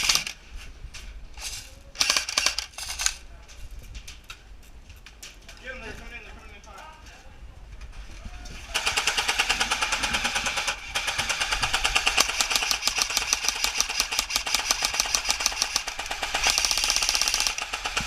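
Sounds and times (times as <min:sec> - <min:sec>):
airsoft gun firing rapid bursts: 0:02.0 - 0:03.1, 0:08.7 - 0:18.0.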